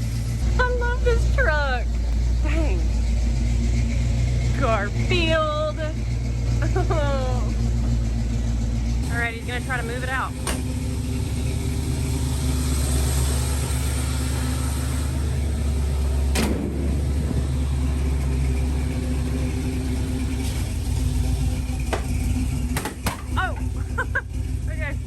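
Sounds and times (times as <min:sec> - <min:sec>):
truck engine idling: 0:00.0 - 0:25.0
sharp clunk: 0:16.3 - 0:17.0, 0:21.9 - 0:23.4.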